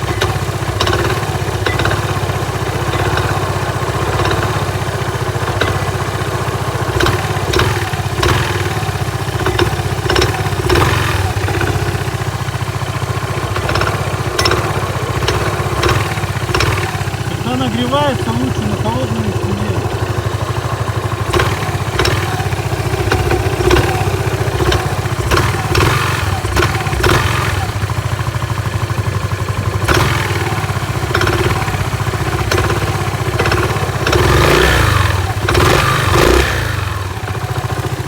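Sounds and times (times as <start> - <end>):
scooter engine running: 0.0 - 38.0.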